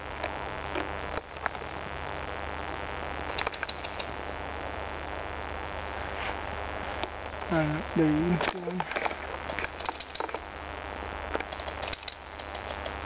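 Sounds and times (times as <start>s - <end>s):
outdoor background hiss: 0.0s - 13.0s
faint clicks: 3.3s - 4.2s, 8.5s - 10.5s, 11.3s - 13.0s.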